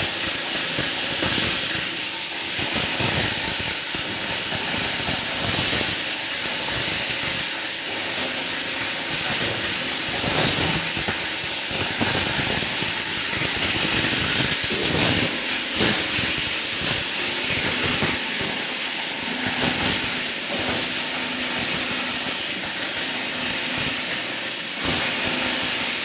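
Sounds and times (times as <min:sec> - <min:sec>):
plastic grinder running: 0:00.0 - 0:26.0.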